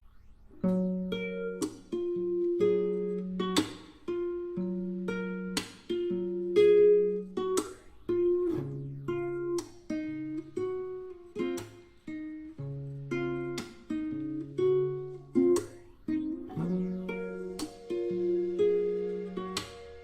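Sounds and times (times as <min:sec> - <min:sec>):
plucked acoustic guitar chords: 0:00.6 - 0:20.0.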